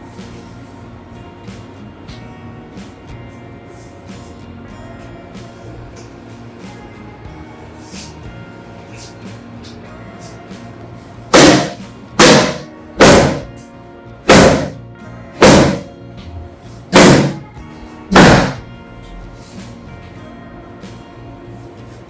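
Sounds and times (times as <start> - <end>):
background music: 0.0 - 22.0
loud thumps on a body: 11.4 - 13.5, 14.3 - 14.8, 15.4 - 15.9, 16.9 - 17.4, 18.1 - 18.7.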